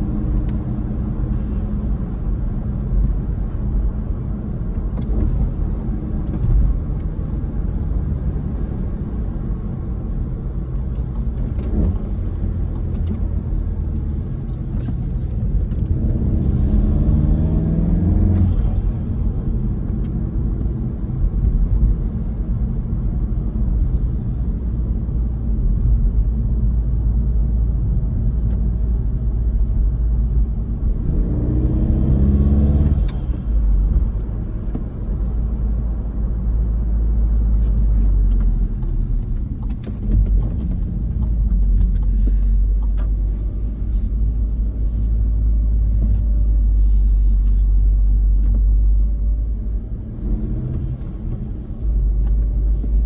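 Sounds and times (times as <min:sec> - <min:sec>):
car engine rumble while driving: 0:00.0 - 0:53.0
engine revving under acceleration: 0:10.7 - 0:22.0, 0:30.6 - 0:36.0, 0:37.5 - 0:53.0.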